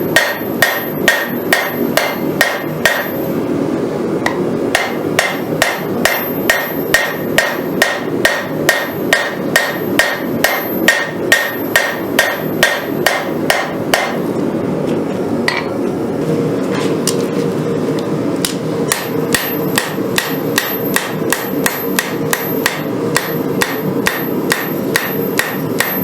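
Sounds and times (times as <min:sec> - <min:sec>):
hammer ringing on an anvil: 0:00.1 - 0:03.3, 0:04.3 - 0:14.2, 0:18.9 - 0:26.0.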